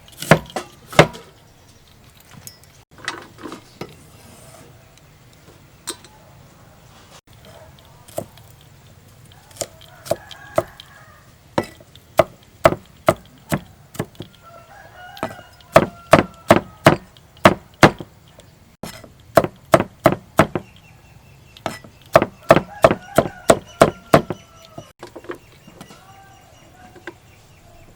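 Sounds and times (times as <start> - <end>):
knife chopping on wooden board: 0.2 - 1.2, 8.1 - 8.3, 9.5 - 10.8, 11.6 - 14.3, 15.2 - 18.1, 18.8 - 20.7, 21.7 - 24.4.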